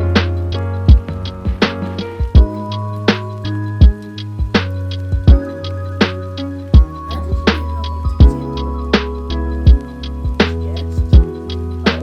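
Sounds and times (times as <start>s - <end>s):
deep bass line: 0.0s - 12.0s
held pitched notes: 0.0s - 12.0s
kick drum and snare hits: 0.9s - 2.6s, 3.8s - 5.4s, 6.8s - 7.6s.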